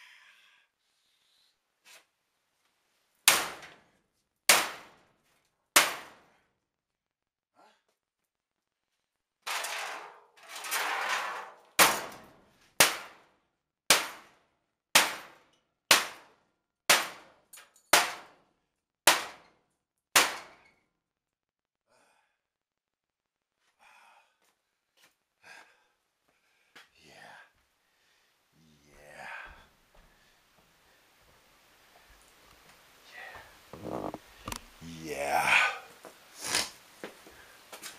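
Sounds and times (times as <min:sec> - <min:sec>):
hammer blows on sheet metal: 0:11.8 - 0:13.2, 0:13.9 - 0:14.3, 0:14.9 - 0:18.4, 0:19.1 - 0:19.5, 0:20.2 - 0:20.7.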